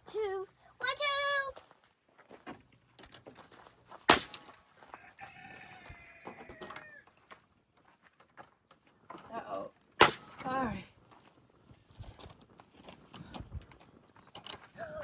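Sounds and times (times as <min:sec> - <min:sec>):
nail gun firing: 0:04.1 - 0:04.5, 0:10.0 - 0:10.5
rooster crowing: 0:04.9 - 0:07.1.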